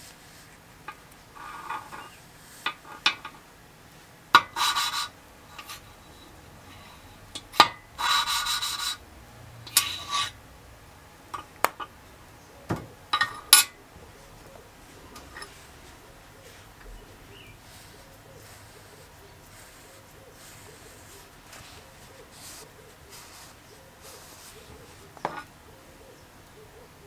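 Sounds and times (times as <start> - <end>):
metal scraping on metal: 0.9 - 3.4, 4.4 - 9.0, 9.6 - 10.4, 15.0 - 25.5.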